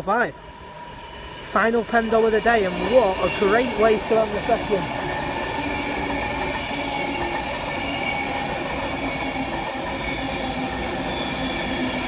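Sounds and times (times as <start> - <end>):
train wheels rumbling on rails: 0.0 - 12.0
constant whine of held tones: 0.1 - 12.0.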